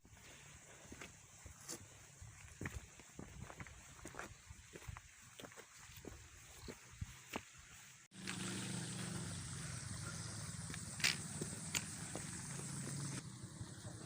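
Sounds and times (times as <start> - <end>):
vehicle engine running: 8.1 - 14.0.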